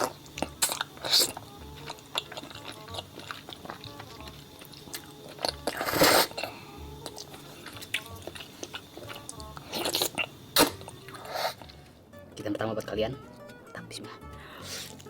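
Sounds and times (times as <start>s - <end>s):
background music: 0.0s - 15.0s
chewing with wet clicks: 0.4s - 5.8s, 6.4s - 11.2s
loud bite: 5.4s - 6.5s, 9.7s - 11.7s.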